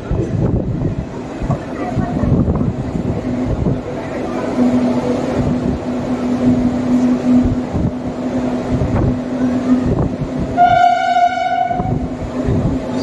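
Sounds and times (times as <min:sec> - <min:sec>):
train wheels rumbling on track: 0:00.0 - 0:13.0
train horn blast: 0:10.5 - 0:12.0.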